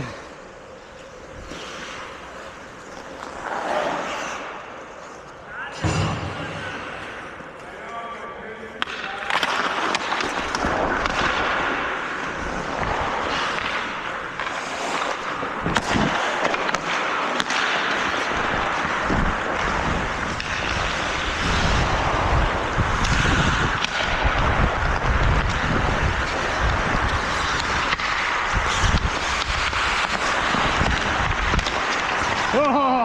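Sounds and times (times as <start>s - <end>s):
skate blades scraping ice: 0.0s - 5.9s, 8.6s - 33.0s
wind on microphone: 19.0s - 29.8s.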